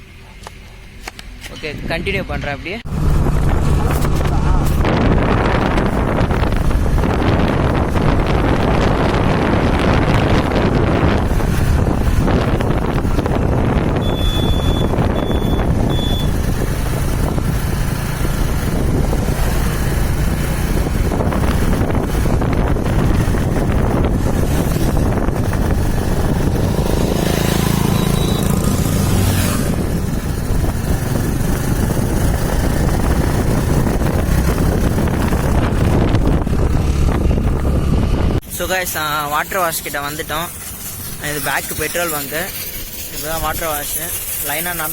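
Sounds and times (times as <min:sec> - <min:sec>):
road and traffic noise: 0:00.0 - 0:44.9
wind rushing over microphone: 0:01.6 - 0:44.9
short high beeps: 0:14.0 - 0:16.3, 0:27.9 - 0:28.5.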